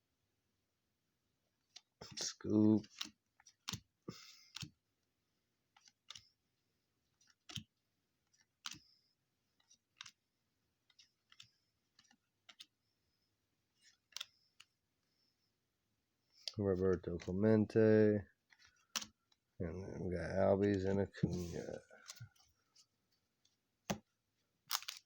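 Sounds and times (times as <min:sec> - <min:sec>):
cards being flipped by hand: 0:01.7 - 0:04.8, 0:05.7 - 0:06.4, 0:07.1 - 0:12.9, 0:13.6 - 0:15.1, 0:18.4 - 0:19.6, 0:20.6 - 0:25.0.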